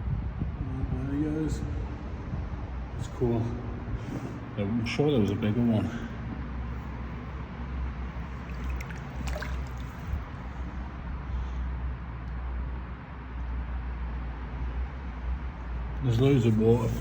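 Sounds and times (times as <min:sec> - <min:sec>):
stream water trickling: 0:08.0 - 0:10.7.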